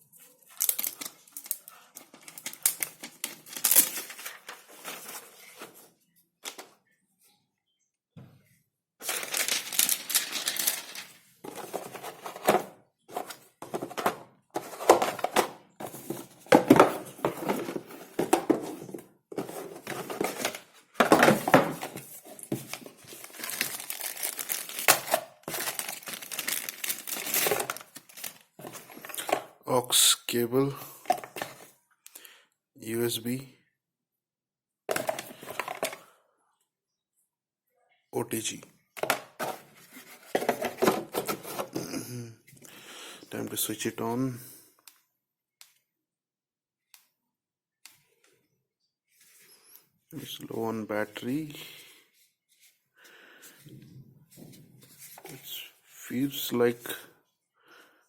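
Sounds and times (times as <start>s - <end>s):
packaging crinkling and rustling: 0.4s - 5.8s, 9.0s - 29.5s.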